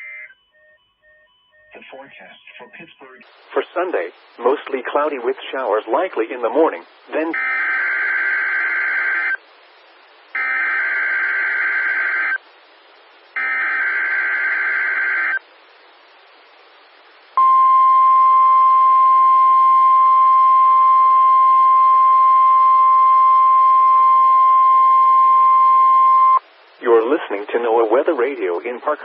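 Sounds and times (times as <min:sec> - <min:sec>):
steady warning alarm tone: 0:00.0 - 0:02.9, 0:07.3 - 0:09.4, 0:10.4 - 0:12.4, 0:13.4 - 0:15.4.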